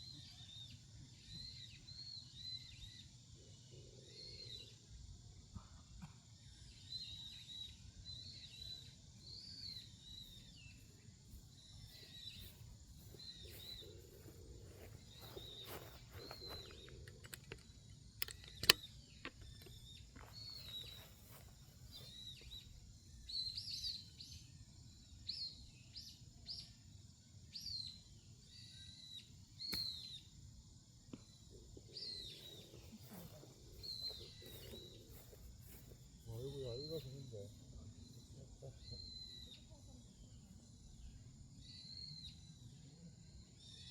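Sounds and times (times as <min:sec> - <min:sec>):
small birds chirping: 0:00.0 - 0:43.9
sharp click: 0:17.1 - 0:19.7.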